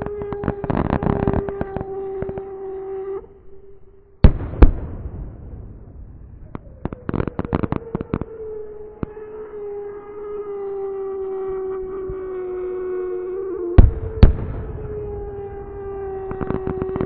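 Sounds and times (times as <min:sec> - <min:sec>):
fireworks cracking and popping: 0:00.0 - 0:02.6, 0:13.8 - 0:17.0
steady siren-like tone: 0:00.0 - 0:04.3, 0:05.0 - 0:17.0
fireworks bangs: 0:04.2 - 0:08.5, 0:13.8 - 0:17.0.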